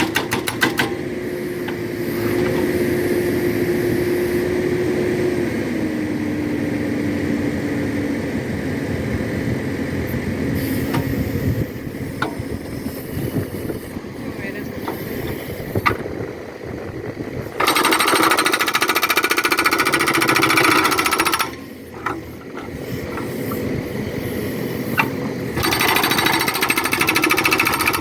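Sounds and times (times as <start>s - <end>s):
hydraulic rock breaker hammering: 0.0s - 2.7s, 17.5s - 23.7s, 24.9s - 28.0s
backhoe engine running: 0.0s - 28.0s.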